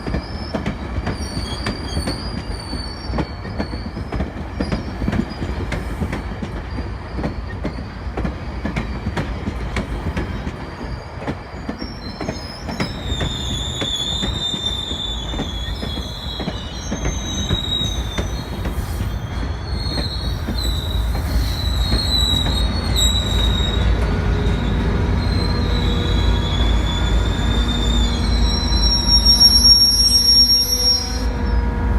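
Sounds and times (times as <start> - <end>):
train rumbling on track: 0.0 - 31.9
high-pitched wheel squeal: 10.7 - 31.6.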